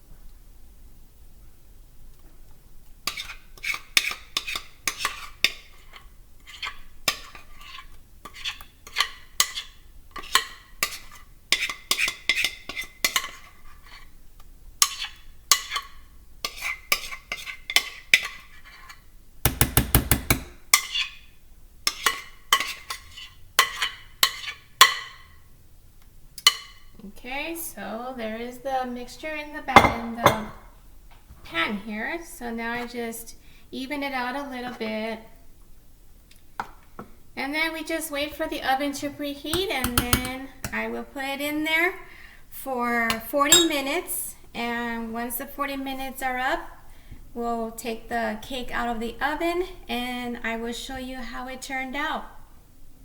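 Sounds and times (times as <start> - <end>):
utensil scraping a mixing bowl: 3.1 - 14.1.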